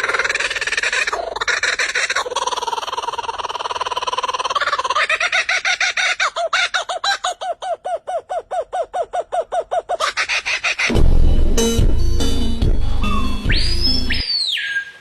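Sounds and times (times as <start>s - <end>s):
loud burst of music: 10.9s - 14.0s
bird calling: 13.0s - 15.0s.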